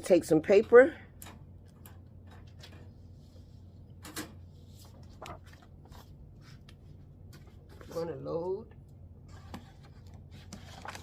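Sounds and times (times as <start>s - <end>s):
low steady hum: 0.0s - 11.0s
paper rustling: 4.5s - 8.0s, 9.3s - 11.0s.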